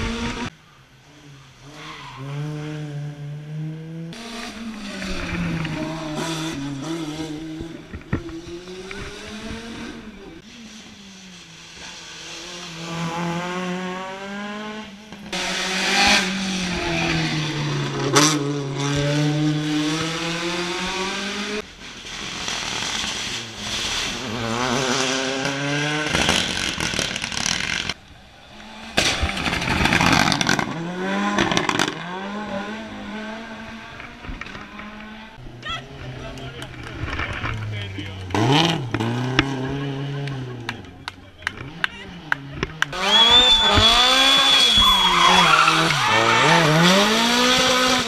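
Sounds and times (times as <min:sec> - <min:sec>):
race car engines revving: 0:00.0 - 0:48.0.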